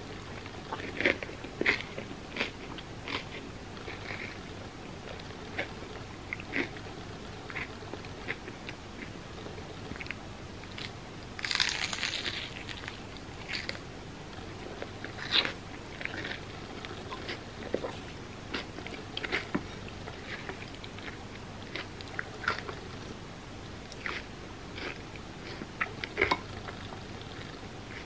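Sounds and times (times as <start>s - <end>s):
crunchy bites and chewing: 10.0s - 13.9s.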